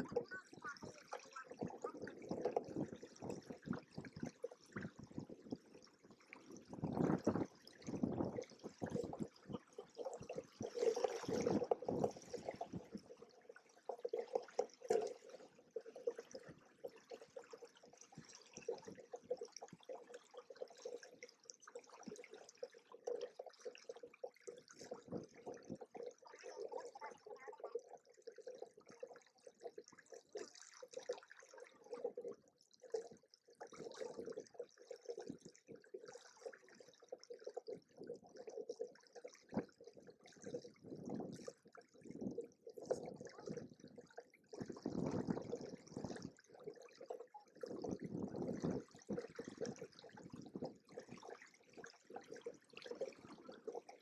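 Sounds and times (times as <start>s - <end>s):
water splashing against hulls: 0.0s - 19.9s, 23.5s - 28.5s.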